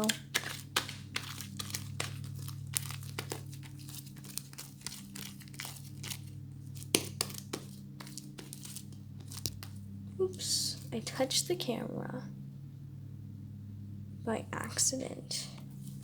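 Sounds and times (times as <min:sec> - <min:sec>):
slime kneaded with wet crackles: 0:00.0 - 0:11.3
steady low hum: 0:00.0 - 0:16.0.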